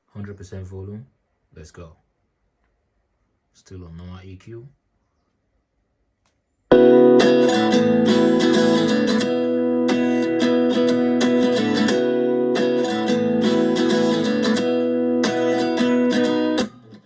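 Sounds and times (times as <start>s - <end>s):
acoustic guitar strumming: 6.7s - 17.0s.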